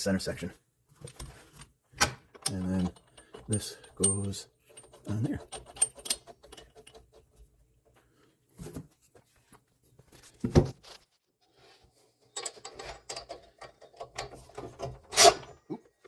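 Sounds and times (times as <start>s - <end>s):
wrench clicks and rattles: 2.3s - 7.4s.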